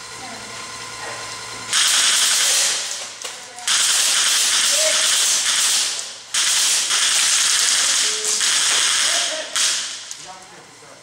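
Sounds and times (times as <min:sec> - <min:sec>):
airsoft gun automatic bursts: 0:01.7 - 0:03.0, 0:03.6 - 0:10.1.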